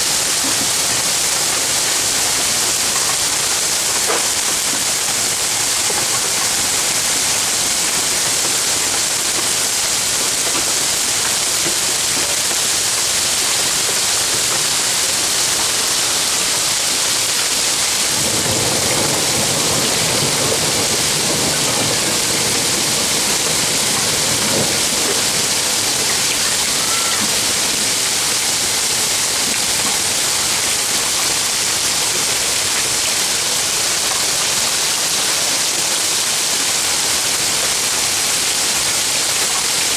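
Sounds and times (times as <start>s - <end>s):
heavy rain hissing: 0.0s - 39.9s
low thunder rumble: 18.0s - 26.4s.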